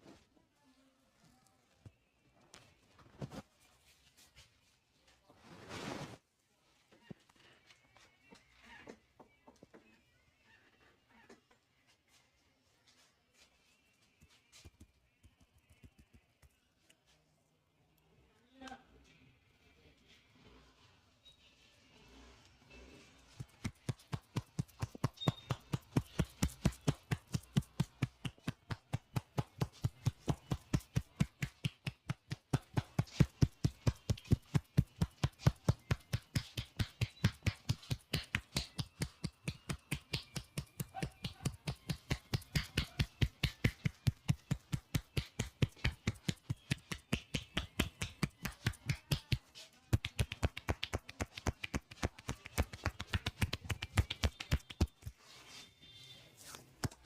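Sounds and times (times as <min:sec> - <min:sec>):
hands slapping head: 0:23.4 - 0:55.2, 0:56.8 - 0:57.0.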